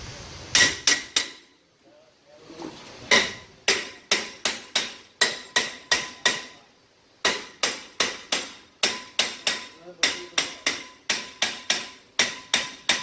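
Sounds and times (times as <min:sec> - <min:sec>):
hammer striking metal: 0:00.5 - 0:01.6, 0:03.1 - 0:06.6, 0:07.2 - 0:13.0.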